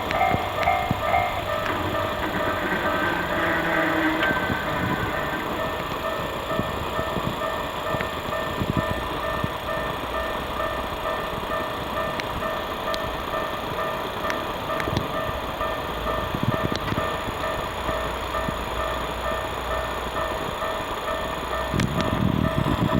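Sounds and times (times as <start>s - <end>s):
level-crossing bell ringing: 0.0s - 16.4s
passing train rumble: 0.0s - 21.4s.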